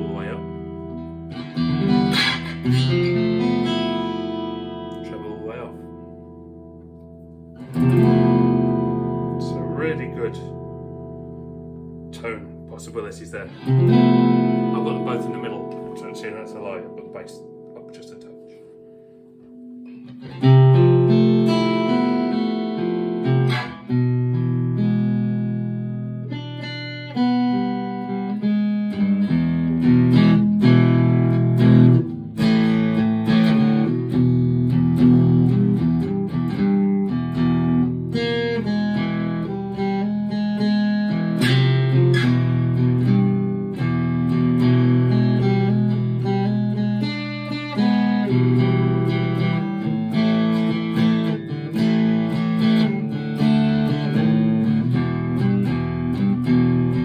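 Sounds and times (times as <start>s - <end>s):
acoustic guitar strumming and picking: 0.0s - 57.0s.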